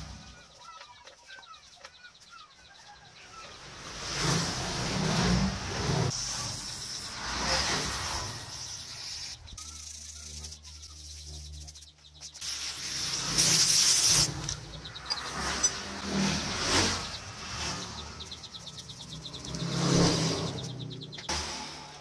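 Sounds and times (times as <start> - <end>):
loud hiss: 12.4 - 14.3
metal scraping strokes: 12.4 - 22.0.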